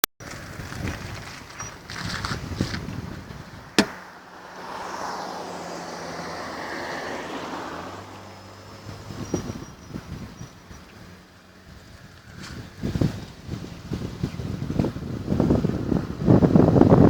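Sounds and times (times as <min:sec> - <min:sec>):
low engine hum: 0:00.2 - 0:17.0
knocks and rustling: 0:03.8 - 0:04.0
sharp click: 0:03.8 - 0:04.0.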